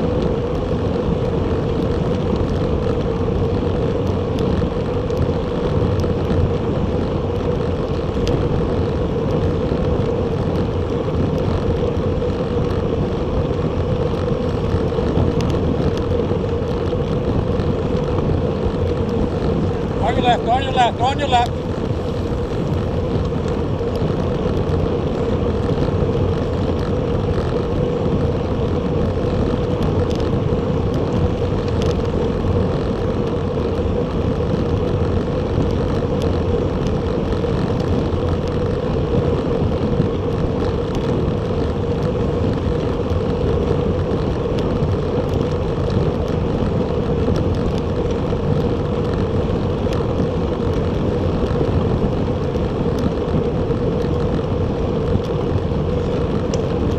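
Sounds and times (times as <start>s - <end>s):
constant hum: 0.0s - 56.9s
wind and road noise: 0.0s - 56.9s.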